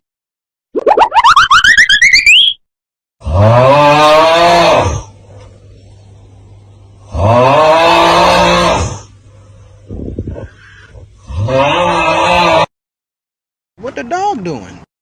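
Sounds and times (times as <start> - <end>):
rising pulsing effect: 0.8 - 2.6
low steady hum: 5.1 - 7.1.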